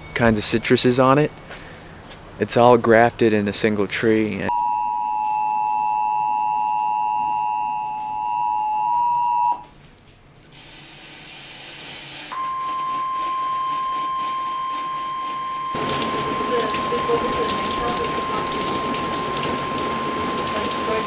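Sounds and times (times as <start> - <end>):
two-tone alarm: 4.5 - 9.7, 10.6 - 21.0.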